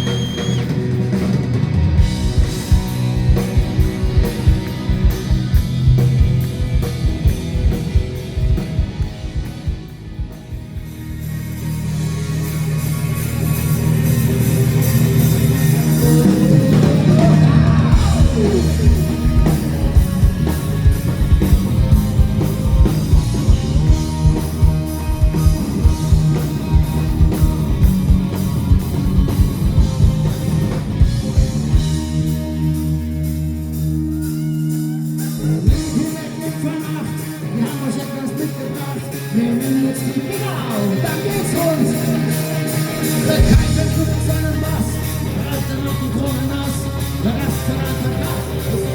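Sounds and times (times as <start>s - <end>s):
drum kit beat: 0.0s - 37.3s, 40.5s - 48.9s
electric guitar: 0.0s - 48.9s
rock band playing: 0.0s - 48.9s
person singing: 15.7s - 20.5s, 34.2s - 48.9s.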